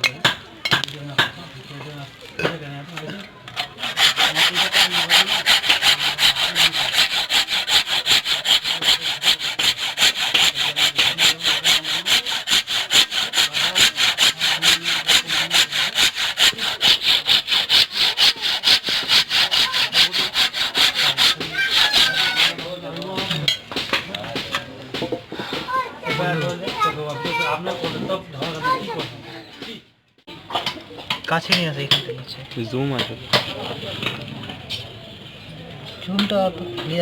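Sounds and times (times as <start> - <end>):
hand tool rasping: 3.6 - 22.8.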